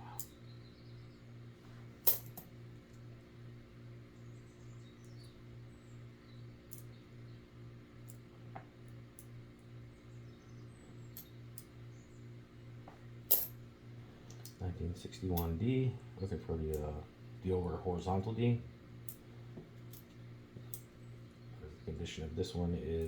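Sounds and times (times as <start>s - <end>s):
pulsing electrical hum: 0.0s - 23.0s
coins clicking: 2.0s - 2.4s, 13.3s - 13.6s.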